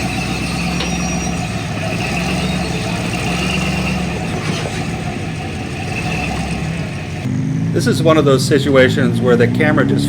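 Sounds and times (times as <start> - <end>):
vehicle engine running at low revs: 0.0 - 10.0.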